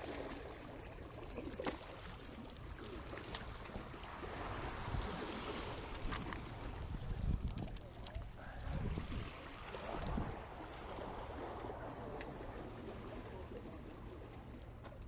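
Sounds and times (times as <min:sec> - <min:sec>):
surf washing: 0:02.9 - 0:15.0
wind rumbling on microphone: 0:03.8 - 0:14.5.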